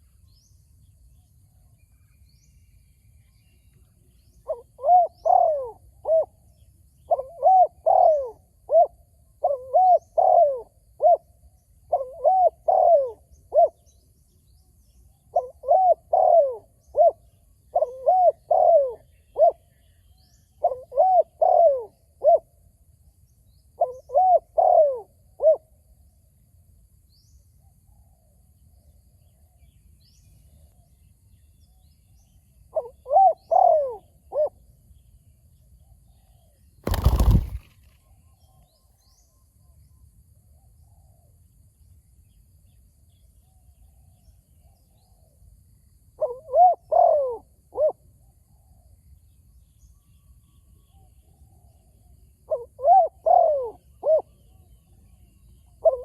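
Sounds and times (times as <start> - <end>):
dove cooing: 4.4 - 6.3, 7.1 - 11.2, 11.9 - 13.8, 15.3 - 19.6, 20.6 - 22.4, 23.8 - 25.6, 32.8 - 34.6, 36.9 - 37.7, 46.2 - 48.0, 52.5 - 54.3.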